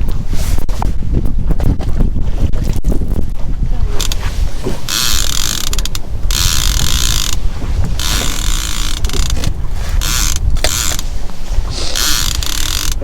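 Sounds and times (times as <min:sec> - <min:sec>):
boat low rumble: 0:00.0 - 0:13.0
fishing reel ratchet clicking: 0:04.9 - 0:07.4, 0:08.0 - 0:11.0, 0:11.8 - 0:13.0.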